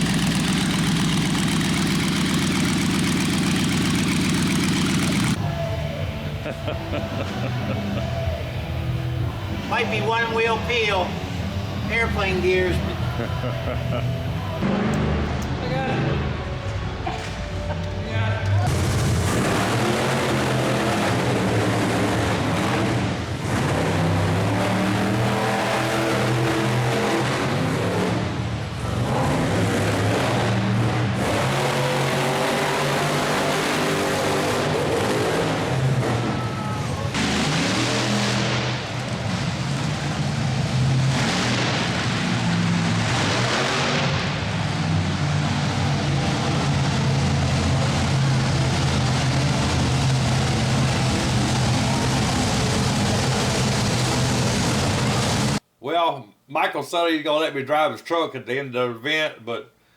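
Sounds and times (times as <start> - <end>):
truck engine revving: 0.0 - 55.6
music: 5.4 - 18.7.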